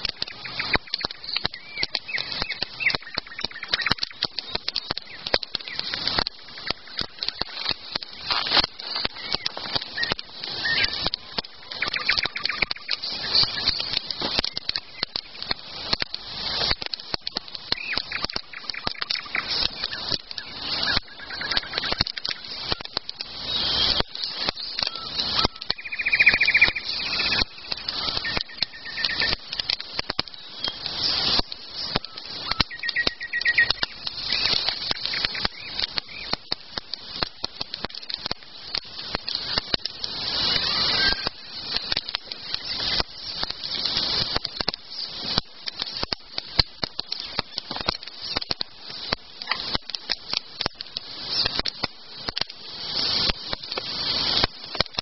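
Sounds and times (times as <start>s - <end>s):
bird chirps: 0.0s - 15.8s, 17.3s - 36.4s, 40.2s - 44.2s
campfire crackling: 0.0s - 55.0s.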